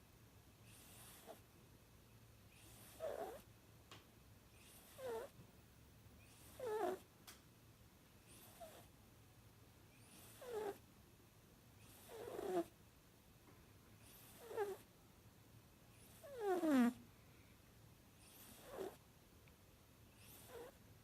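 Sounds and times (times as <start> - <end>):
puppy whistling snores: 0.6 - 1.4, 2.5 - 3.5, 4.5 - 5.4, 6.2 - 7.0, 8.3 - 8.9, 9.9 - 10.8, 11.8 - 12.7, 14.0 - 14.8, 15.9 - 17.0, 18.2 - 19.0, 20.1 - 20.8.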